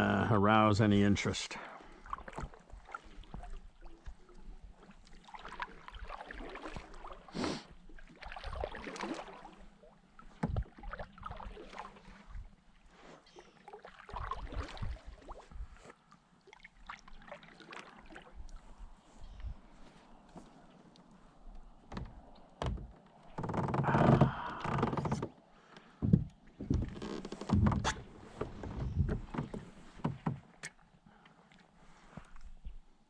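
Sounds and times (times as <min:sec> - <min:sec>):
water splashes: 0:00.0 - 0:30.7
fishing gear knocks and clicks: 0:26.0 - 0:30.8.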